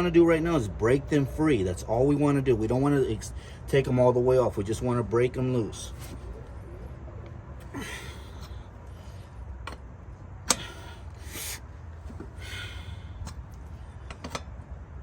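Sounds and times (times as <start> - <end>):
person breathing with effort: 7.6 - 9.6, 10.5 - 14.1
lug wrench metallic clicks: 9.6 - 10.8, 13.2 - 14.6.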